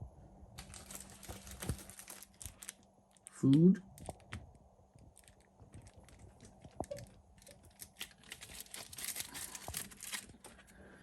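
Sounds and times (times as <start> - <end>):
plastic container crinkling: 0.6 - 3.4, 5.0 - 10.6.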